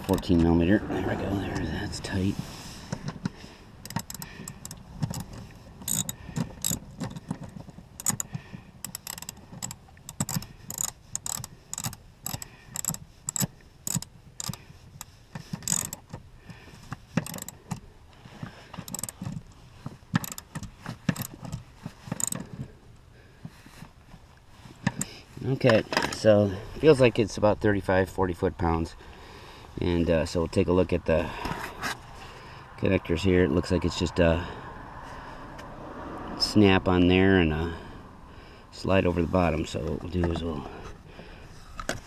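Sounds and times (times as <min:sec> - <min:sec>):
hand ratchet clicking: 0:03.8 - 0:16.2, 0:17.1 - 0:17.8, 0:18.7 - 0:19.5, 0:20.1 - 0:22.5.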